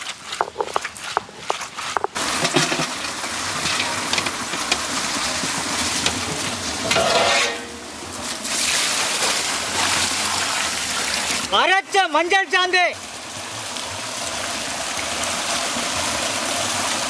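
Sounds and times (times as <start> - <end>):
food sizzling in hot oil: 2.1 - 11.4.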